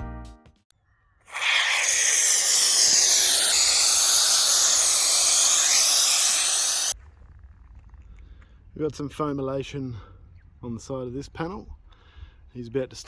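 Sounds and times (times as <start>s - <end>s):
spray foam hissing: 1.3s - 7.0s.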